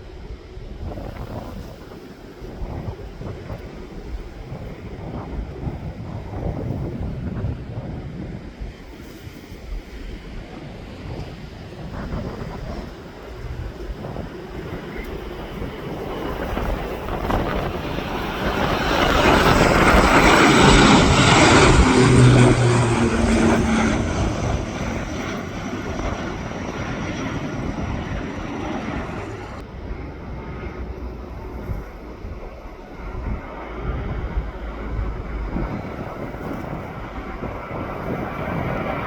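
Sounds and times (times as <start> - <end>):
airliner engine noise: 0.0 - 39.0
wind rumbling on microphone: 0.0 - 39.0.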